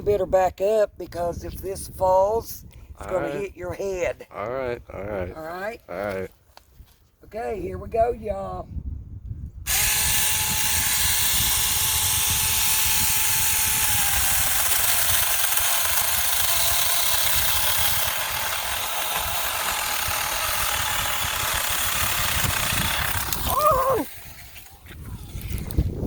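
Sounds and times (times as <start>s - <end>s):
cordless chainsaw cutting wood: 9.7s - 24.8s.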